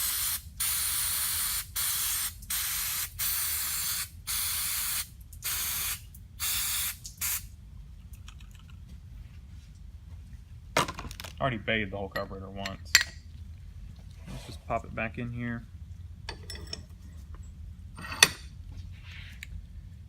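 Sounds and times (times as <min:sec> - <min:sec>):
aerosol can spraying: 0:00.0 - 0:07.5.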